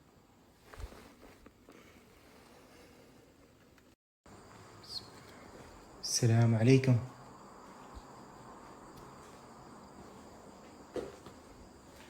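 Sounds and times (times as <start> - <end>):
light footsteps: 4.3 - 6.5, 7.1 - 12.0
heavy footstep thump: 10.9 - 11.4.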